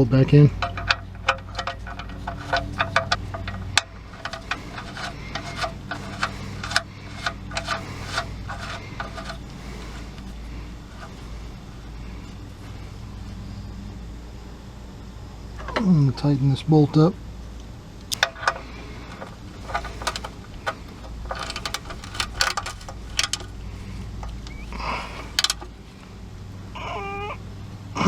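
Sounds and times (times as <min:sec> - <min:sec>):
low steady hum: 0:00.0 - 0:28.0
sharp metallic clicks: 0:00.5 - 0:11.2, 0:17.6 - 0:25.8.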